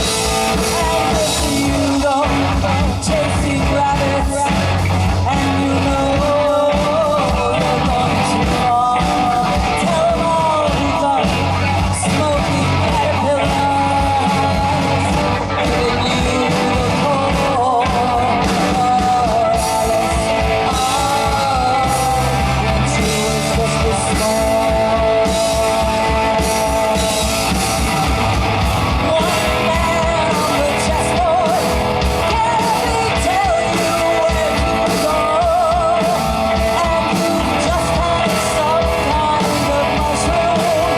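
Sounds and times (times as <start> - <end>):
bass guitar: 0.0 - 40.9
electric guitar: 0.0 - 40.9
person singing: 0.0 - 40.9
steady drum beat: 0.0 - 40.9.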